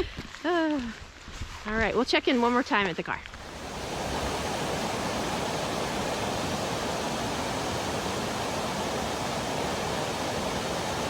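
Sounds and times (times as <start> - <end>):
steady rain falling: 3.2 - 11.0.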